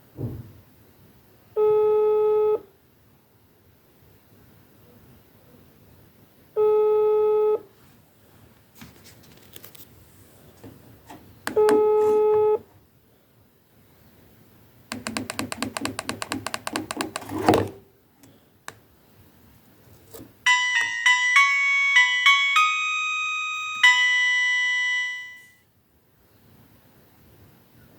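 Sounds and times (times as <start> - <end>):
phone beeps: 11.5 - 12.6, 20.5 - 25.5
phone rattling buzz: 14.9 - 17.8, 20.5 - 25.5
electronic ringtone melody: 20.5 - 25.6.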